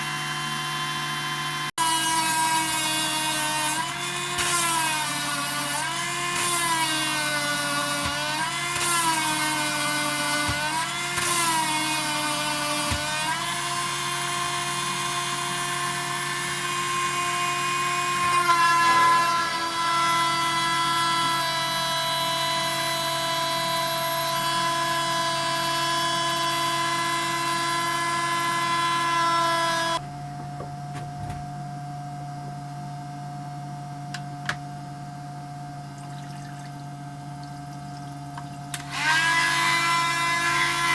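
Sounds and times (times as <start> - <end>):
rotary tool drilling stone: 0.0 - 30.0, 38.6 - 40.9.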